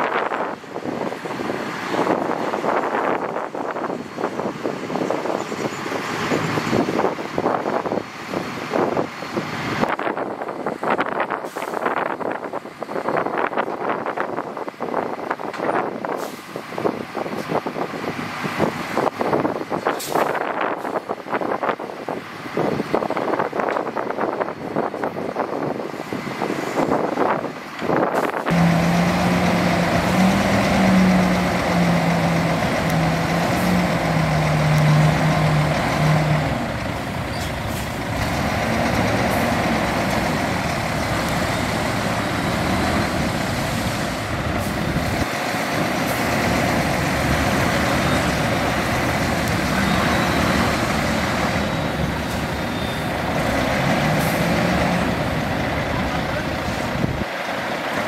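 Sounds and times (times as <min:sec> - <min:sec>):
diesel machinery engine running: 0:21.9 - 0:58.0.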